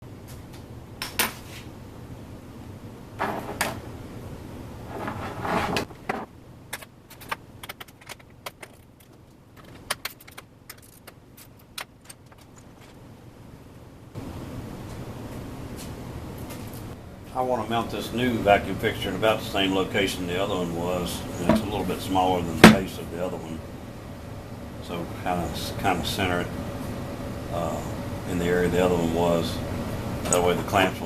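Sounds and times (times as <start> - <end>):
low steady hum: 0.0 - 31.0
scraping rustling handling noise: 4.9 - 6.3.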